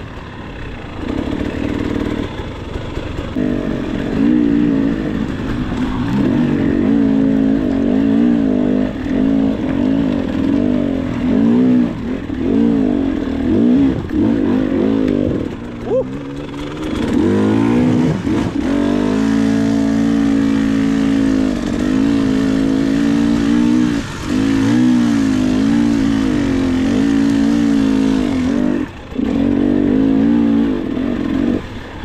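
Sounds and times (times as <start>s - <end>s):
dirt bike engine revving: 0.0s - 32.0s.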